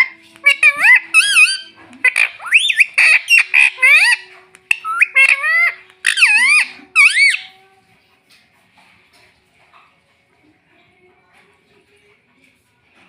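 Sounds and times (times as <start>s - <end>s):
parrot high-pitched calls: 0.0s - 7.6s.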